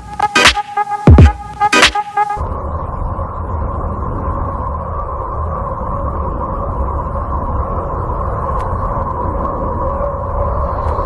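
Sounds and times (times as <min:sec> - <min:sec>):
electronic music with kick drums: 0:00.0 - 0:02.4
low droning rumble: 0:01.0 - 0:11.0.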